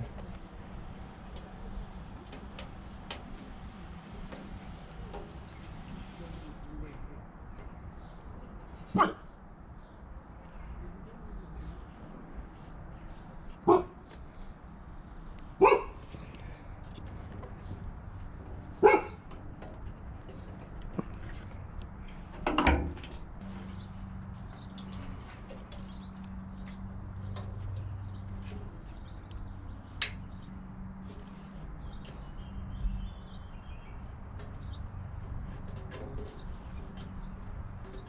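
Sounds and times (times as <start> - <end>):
dog barking: 8.9 - 9.3, 13.6 - 14.0, 15.6 - 16.0, 18.8 - 19.2.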